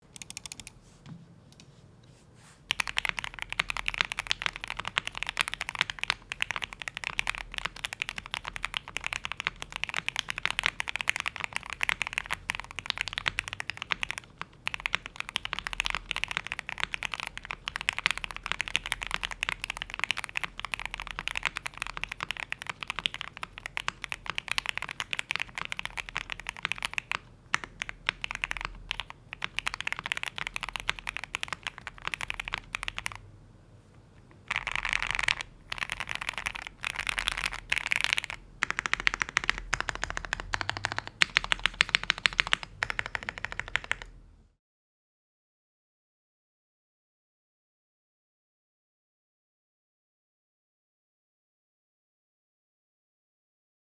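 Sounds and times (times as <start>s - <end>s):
fast mechanical keyboard typing: 0.1s - 0.7s, 2.7s - 33.2s, 34.4s - 44.2s.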